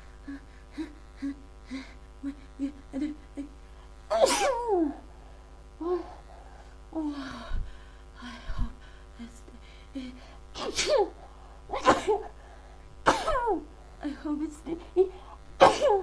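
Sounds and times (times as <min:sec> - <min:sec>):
woman sneezing: 0:04.1 - 0:05.0, 0:10.6 - 0:12.3, 0:15.6 - 0:16.0.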